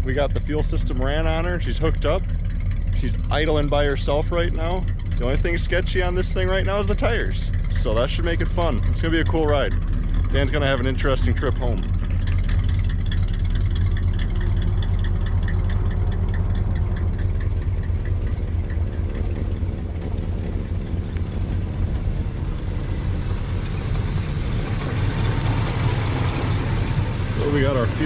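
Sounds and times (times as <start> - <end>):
car engine idling: 0.0 - 28.0
faint rapid ticking: 1.3 - 28.0.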